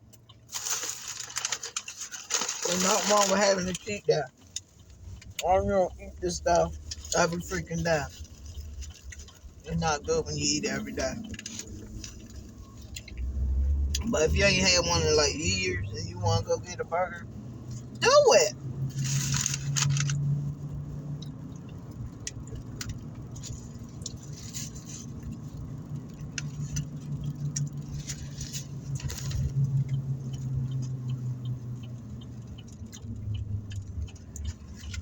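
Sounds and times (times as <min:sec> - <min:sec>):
small clicks and crackles: 0:00.0 - 0:09.8, 0:11.0 - 0:14.0, 0:18.9 - 0:35.0
car low hum: 0:00.0 - 0:35.0
paper wrappers crinkling: 0:00.5 - 0:04.2, 0:06.3 - 0:14.8, 0:18.9 - 0:20.4, 0:22.6 - 0:29.8.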